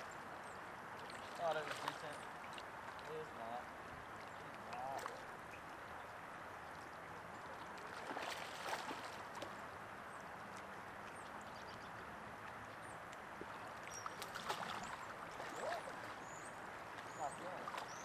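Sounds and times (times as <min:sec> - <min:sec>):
creek water flowing: 0:00.0 - 0:18.0.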